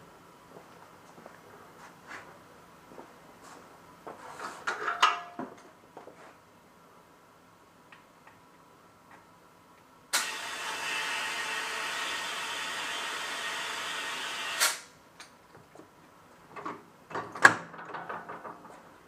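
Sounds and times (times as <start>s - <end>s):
tire-changing machine running: 10.2s - 14.8s.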